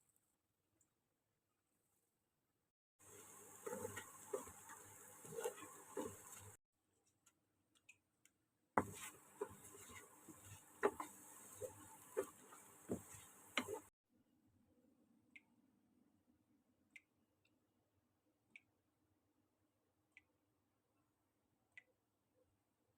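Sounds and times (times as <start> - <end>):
food sizzling in a pan: 3.0 - 6.6, 8.8 - 13.9
spatula scraping a pan: 3.0 - 6.6, 8.8 - 13.9.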